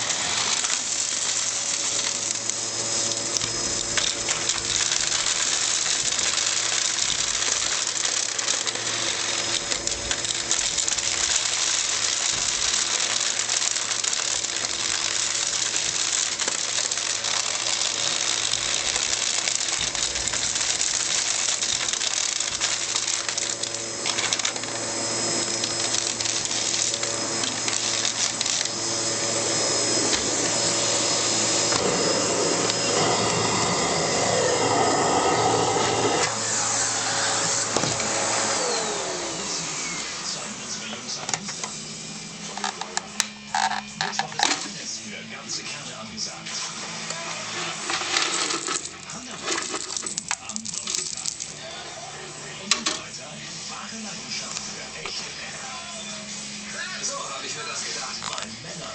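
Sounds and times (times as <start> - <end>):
debris rattling inside vacuum: 0.0 - 34.2
vacuum cleaner running: 0.0 - 58.9.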